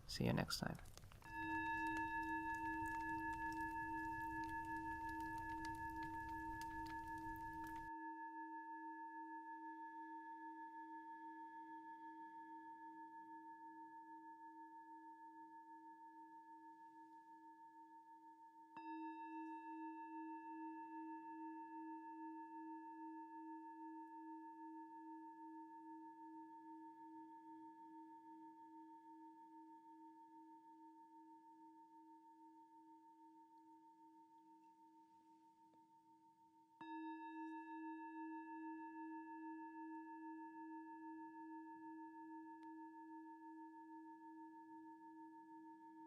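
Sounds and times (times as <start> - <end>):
singing bowl ringing: 1.2 - 8.7, 36.8 - 44.4.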